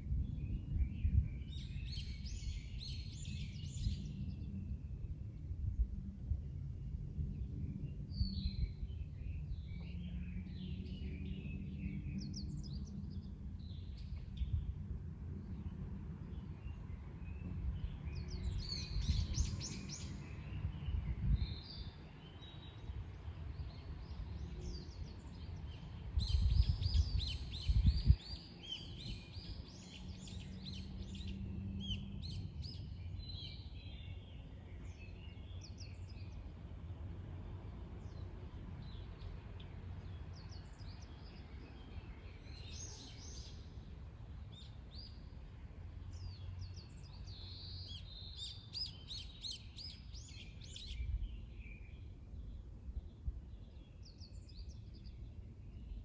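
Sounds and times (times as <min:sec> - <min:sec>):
birds singing and chirping: 0:16.3 - 0:22.9, 0:23.5 - 0:36.4, 0:40.1 - 0:43.7, 0:46.2 - 0:52.1.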